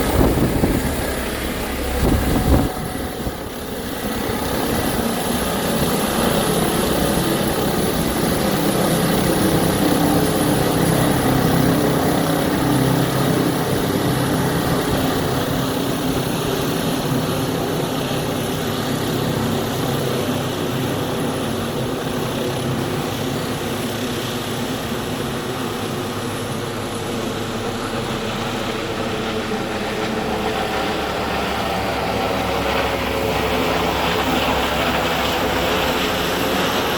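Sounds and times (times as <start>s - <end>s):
helicopter rotor and turbines: 0.0s - 36.9s.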